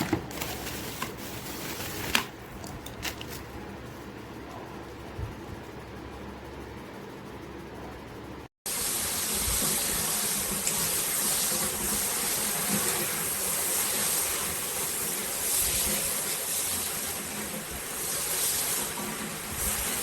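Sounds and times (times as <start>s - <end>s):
shower head spraying water: 8.7s - 20.0s.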